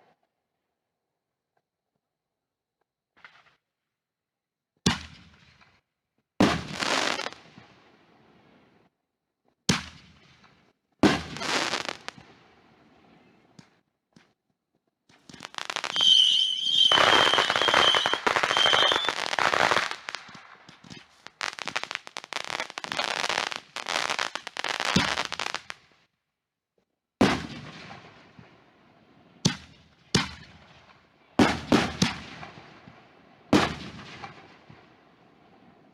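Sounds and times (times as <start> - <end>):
fireworks crackling: 6.4 - 7.5, 11.0 - 12.3, 15.2 - 25.9
firework bangs: 11.0 - 12.3, 15.3 - 25.8, 29.4 - 34.8
firework whistle: 15.4 - 25.3.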